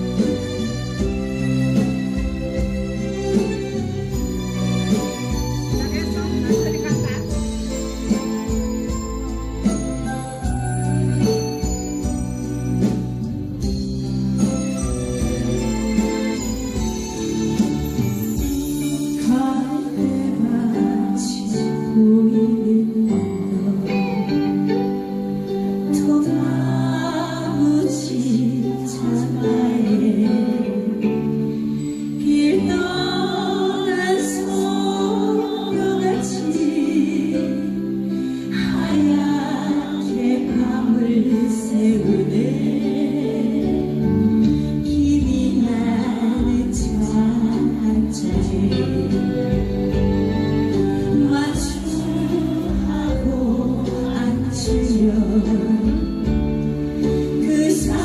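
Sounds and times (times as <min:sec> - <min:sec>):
instrumental accompaniment: 0:00.0 - 0:58.0
woman singing a slow ballad: 0:17.8 - 0:58.0.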